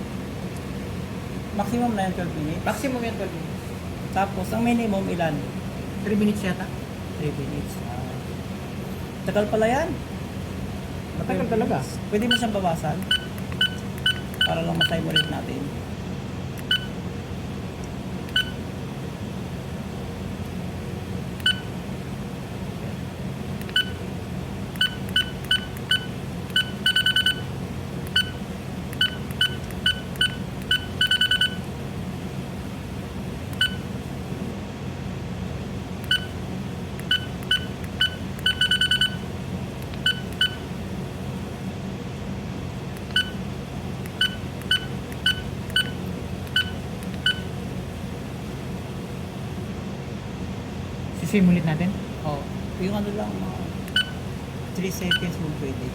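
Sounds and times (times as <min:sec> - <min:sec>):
steady low hum: 0:00.0 - 0:55.9
electronic key beeps: 0:12.2 - 0:15.4, 0:16.6 - 0:17.0, 0:18.3 - 0:18.6, 0:21.4 - 0:21.7, 0:23.6 - 0:24.0, 0:24.8 - 0:27.5, 0:28.1 - 0:28.4, 0:29.0 - 0:31.7, 0:33.6 - 0:33.8, 0:36.1 - 0:36.4, 0:37.0 - 0:39.3, 0:40.0 - 0:40.7, 0:43.0 - 0:43.4, 0:44.1 - 0:47.5, 0:53.9 - 0:54.2, 0:55.0 - 0:55.4.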